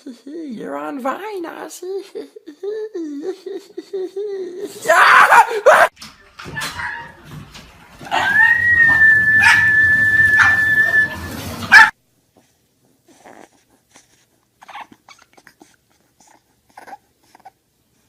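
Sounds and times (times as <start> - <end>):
dog whining high-pitched: 8.1 - 11.9.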